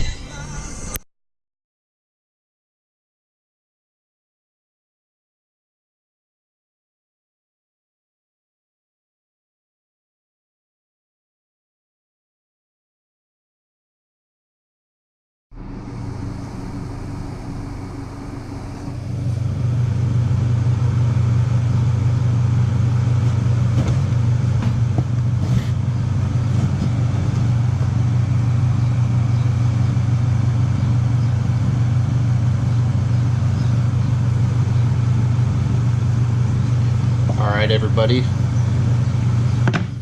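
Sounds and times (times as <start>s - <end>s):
car engine and road noise: 15.5s - 40.0s.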